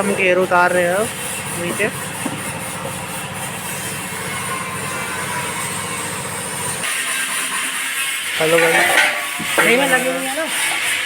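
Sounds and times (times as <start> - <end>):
motor running with fast throb: 0.0 - 6.9.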